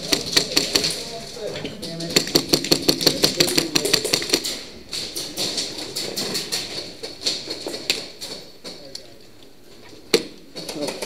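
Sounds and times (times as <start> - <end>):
airsoft guns firing: 0.0 - 1.2, 2.0 - 8.2.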